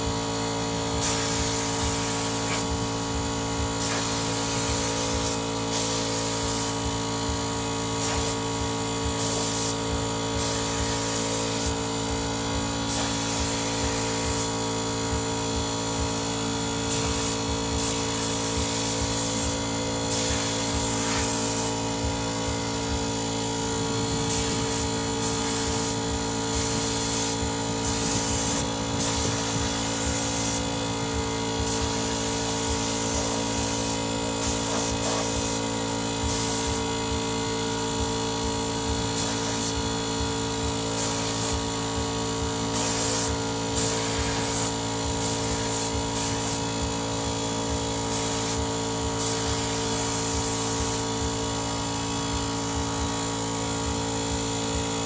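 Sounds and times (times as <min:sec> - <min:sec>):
air compressor running: 0:00.0 - 0:55.0
short bursts of high hiss: 0:01.0 - 0:02.8, 0:03.8 - 0:06.8, 0:16.9 - 0:22.0, 0:24.3 - 0:30.8, 0:42.7 - 0:46.6.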